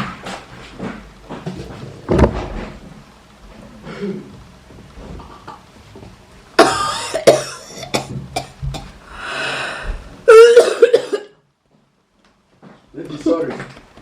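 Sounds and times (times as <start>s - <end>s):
person coughing and hacking: 6.6s - 8.9s, 10.3s - 11.4s
strained gagging cough: 6.6s - 8.9s, 10.3s - 11.4s.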